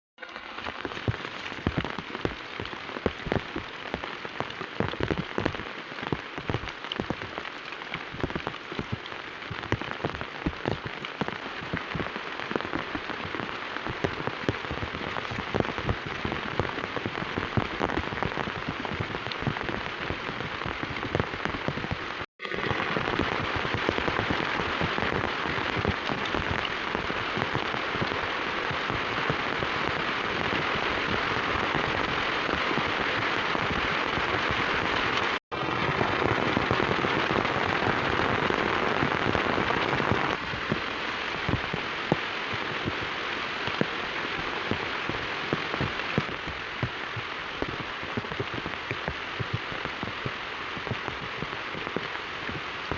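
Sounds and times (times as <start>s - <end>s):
heavy rain on hard surface: 0.2s - 52.9s.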